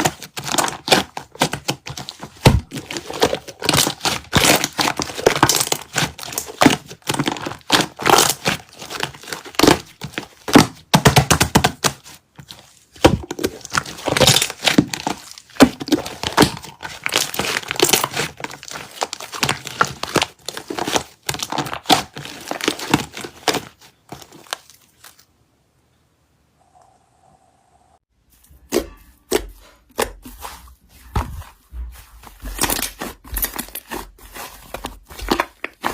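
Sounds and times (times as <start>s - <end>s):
slime crackling and popping: 13.0s - 23.6s.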